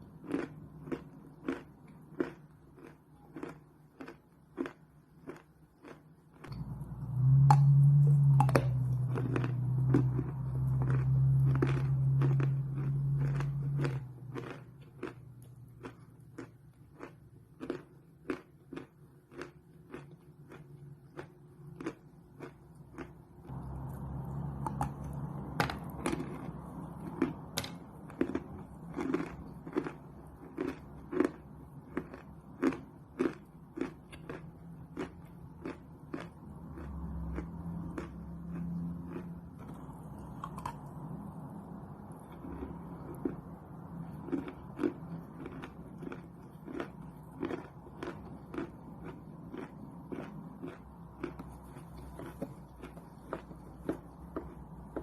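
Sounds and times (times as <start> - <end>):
chewing chalk crunches: 0.0 - 41.3, 42.1 - 55.0
low rumble: 6.5 - 14.2, 23.4 - 28.9.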